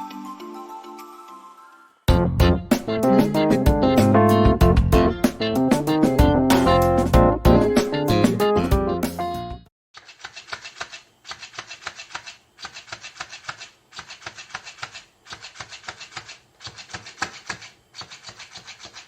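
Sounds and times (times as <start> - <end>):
fast rasping scratching strokes: 10.0 - 19.0.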